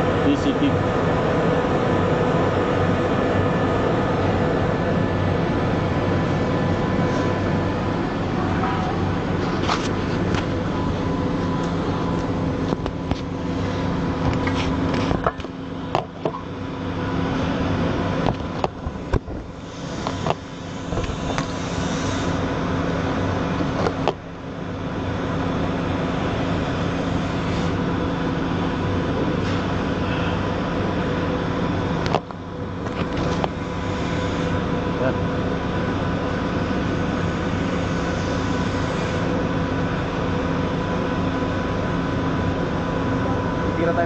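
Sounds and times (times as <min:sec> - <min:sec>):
welder hissing and humming: 0:18.9 - 0:23.8, 0:33.3 - 0:35.0, 0:36.6 - 0:39.8.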